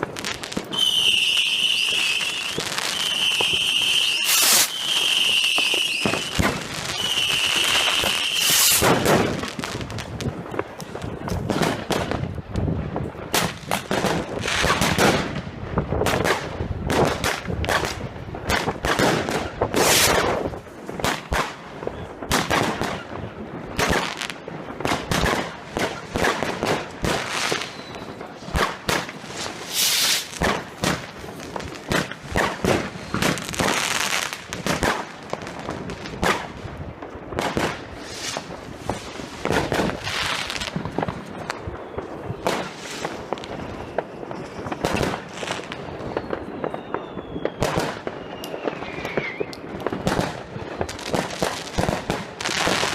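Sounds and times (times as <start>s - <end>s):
fireworks hissing bursts: 0.0s - 9.9s, 19.7s - 20.4s, 25.2s - 36.5s, 37.4s - 46.5s
fireworks bangs and crackling: 0.0s - 52.9s.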